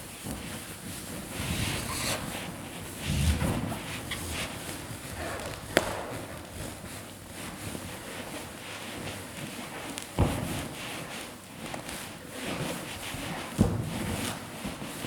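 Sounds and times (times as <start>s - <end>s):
rubber balloons rustling and rubbing: 0.8s - 7.4s.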